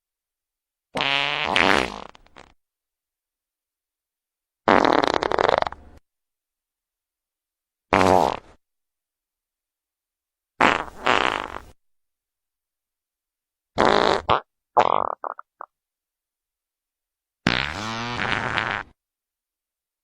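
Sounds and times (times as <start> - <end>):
wet fart sound effects: 1.0 - 2.6, 4.7 - 5.8, 7.9 - 8.6, 10.6 - 11.8, 13.8 - 15.7, 17.4 - 19.0.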